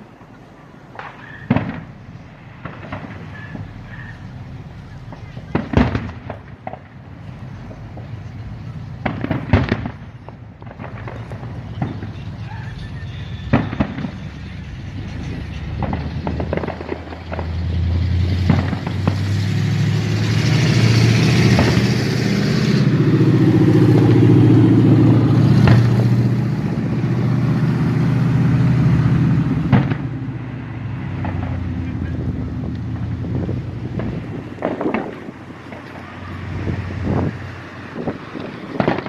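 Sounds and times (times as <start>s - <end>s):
fireworks popping and crackling: 0.0s - 39.0s
vehicle engine running: 10.2s - 39.0s.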